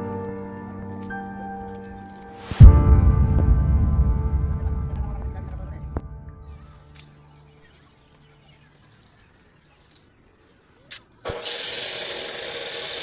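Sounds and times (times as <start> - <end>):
power tool grinding metal: 11.3 - 13.0.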